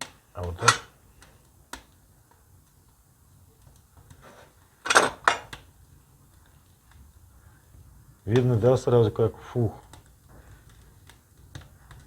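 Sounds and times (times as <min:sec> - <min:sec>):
stove door metallic clatter: 0:04.8 - 0:05.6.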